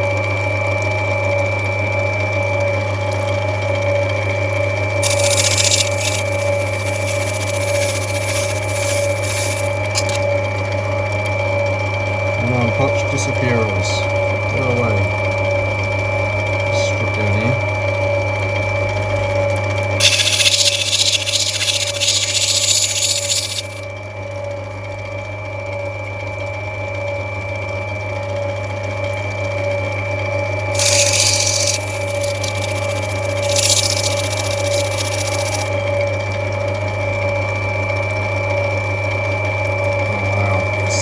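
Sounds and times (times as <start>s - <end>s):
grinding wheel motor hum: 4.9s - 10.4s, 20.0s - 23.8s, 30.7s - 35.8s
stone grinding hiss: 5.0s - 10.2s, 20.0s - 23.8s, 30.8s - 35.7s.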